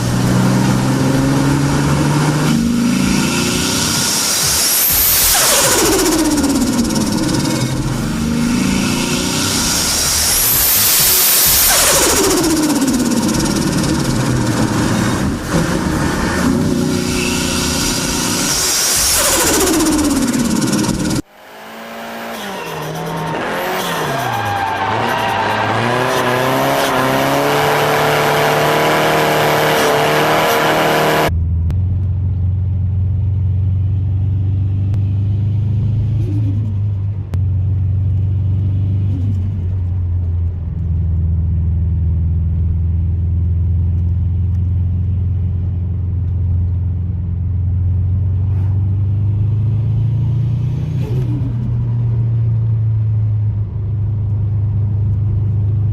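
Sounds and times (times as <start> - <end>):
deep engine drone: 0.0 - 21.3, 25.9 - 55.9
car engine revving hard: 0.0 - 31.3.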